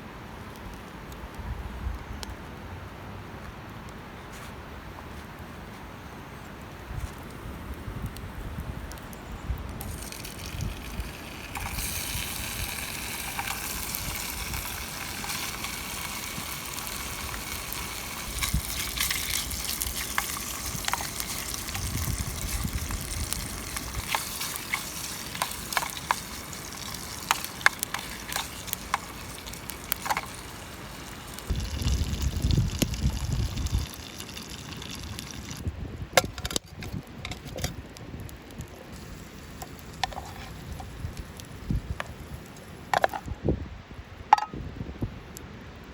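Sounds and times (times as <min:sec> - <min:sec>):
fire pops and crackles: 0:07.0 - 0:43.3
food sizzling over campfire: 0:07.0 - 0:43.3.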